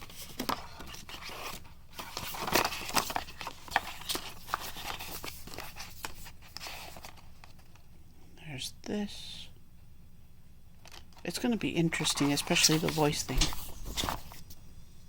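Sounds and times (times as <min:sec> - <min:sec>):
paper pages rustling: 0:00.0 - 0:07.9, 0:10.8 - 0:14.6.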